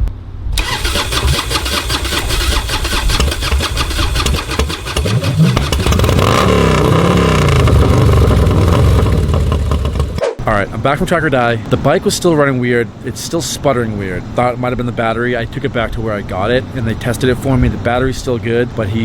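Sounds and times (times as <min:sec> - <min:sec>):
motorcycle engine revving: 0:00.6 - 0:10.2.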